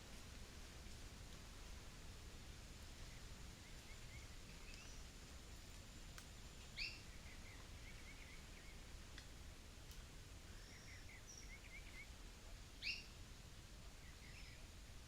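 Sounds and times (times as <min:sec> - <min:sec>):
faint bird chirps: 0:02.9 - 0:05.1, 0:06.8 - 0:08.9, 0:10.5 - 0:12.2, 0:12.8 - 0:13.2, 0:13.8 - 0:14.8.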